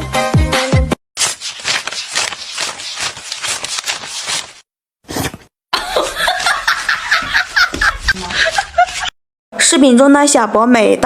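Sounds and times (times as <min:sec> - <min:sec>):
rustling and scraping with clicks: 0:01.3 - 0:04.6.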